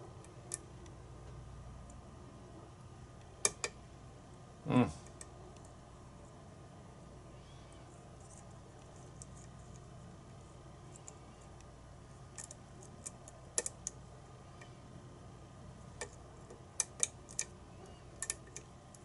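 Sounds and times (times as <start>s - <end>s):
faint low hum: 0.0s - 19.0s.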